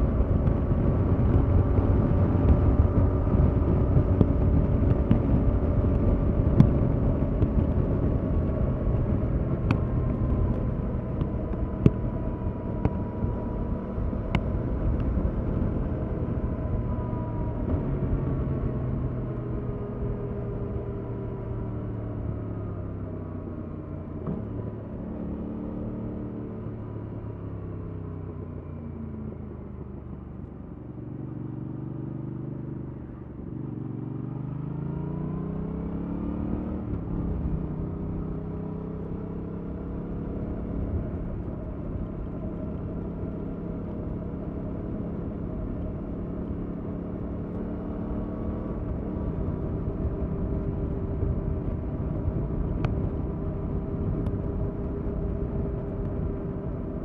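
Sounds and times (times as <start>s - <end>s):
wind and road noise: 0.0s - 57.0s
motorcycle engine revving: 31.0s - 57.0s.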